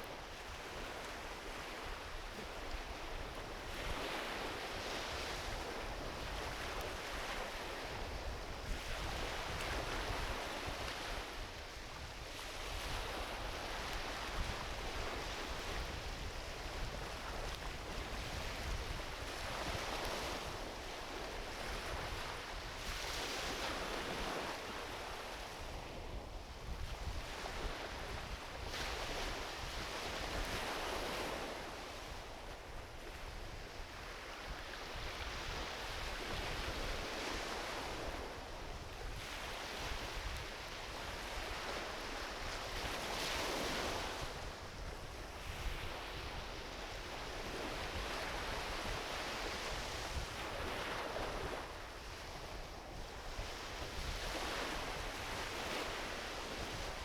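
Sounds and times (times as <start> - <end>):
small waves washing onto beach: 0.0 - 57.0.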